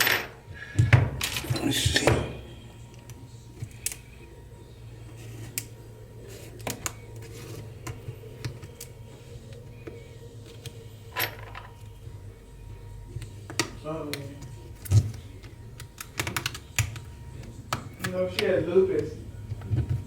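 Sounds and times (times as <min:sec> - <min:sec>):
small tools clicking and tapping: 0:13.2 - 0:20.0.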